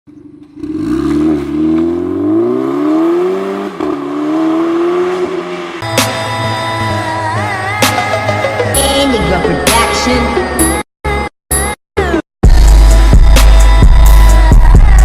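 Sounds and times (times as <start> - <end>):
car engine accelerating: 0.1 - 7.2
music: 5.8 - 15.0.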